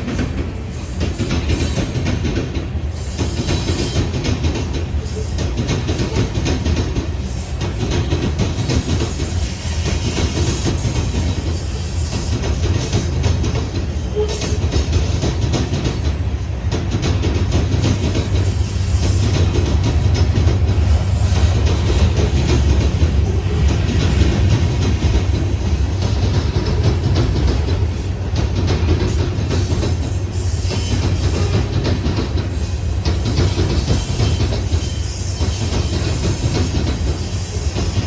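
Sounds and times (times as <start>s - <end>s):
clatter of train wheels: 0.0s - 38.0s
freight train rumbling past: 0.0s - 38.0s.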